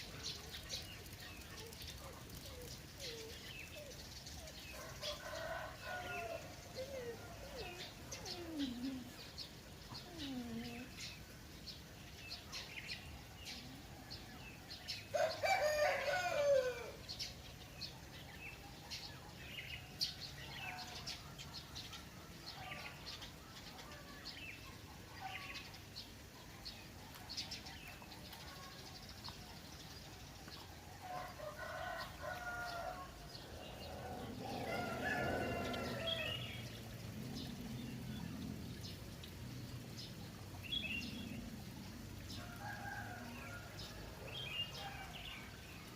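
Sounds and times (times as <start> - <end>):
small birds chirping: 0.0 - 45.9
roosters crowing: 15.1 - 17.0, 31.1 - 36.7, 42.3 - 45.3.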